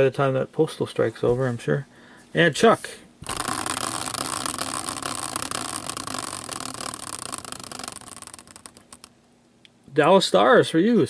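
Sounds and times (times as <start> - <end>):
prize wheel clicking: 3.2 - 9.1.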